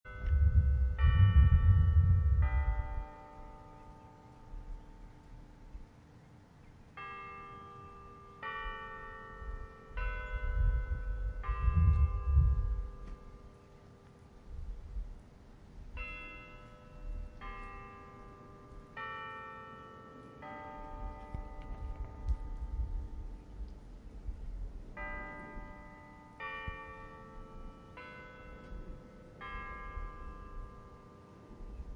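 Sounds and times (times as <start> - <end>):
low rumble: 0.1 - 3.1, 10.2 - 13.2, 14.4 - 16.0, 21.0 - 25.0.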